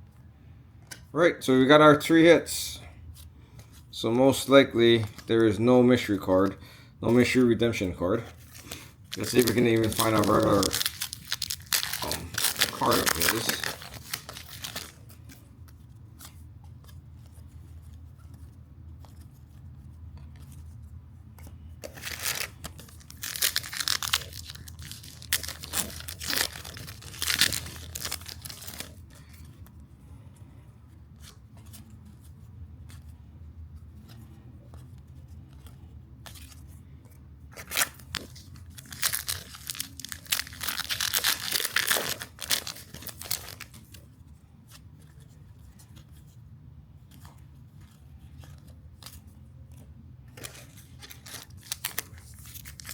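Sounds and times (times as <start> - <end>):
foil wrappers tearing and crinkling: 8.5 - 15.3, 21.8 - 29.1, 37.6 - 44.0, 50.3 - 52.9.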